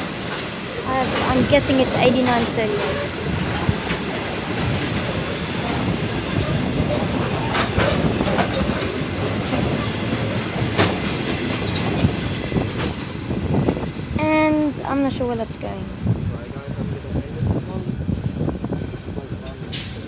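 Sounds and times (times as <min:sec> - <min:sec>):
wheels clicking over rail joints: 0:00.0 - 0:13.7
train wheels rumbling on rail: 0:00.0 - 0:20.0.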